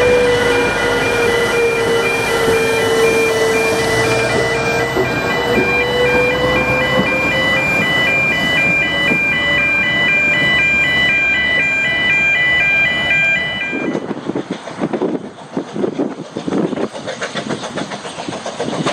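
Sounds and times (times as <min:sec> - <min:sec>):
electronic two-tone alarm: 0:00.0 - 0:14.1.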